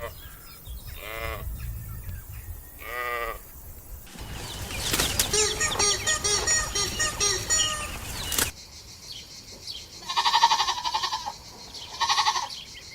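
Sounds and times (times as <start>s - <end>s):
quavering bleats: 2.8s - 3.4s, 10.0s - 11.3s, 11.9s - 12.6s
chorus of high-pitched calls: 4.1s - 8.6s.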